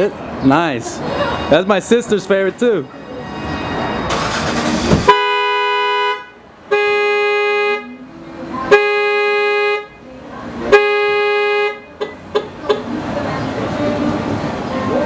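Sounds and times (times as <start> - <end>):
car horn blasts: 5.0 - 10.0, 10.7 - 12.8.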